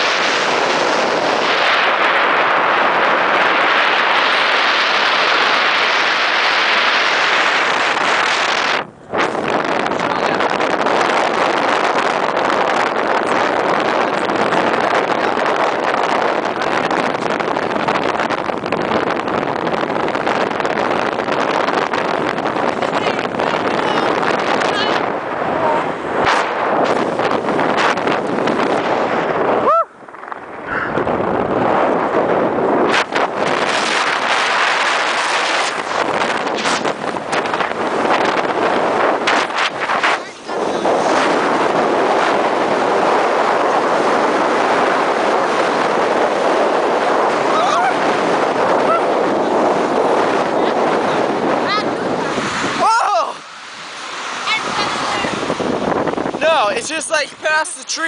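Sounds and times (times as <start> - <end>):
strong wind on microphone: 0.0 - 58.0.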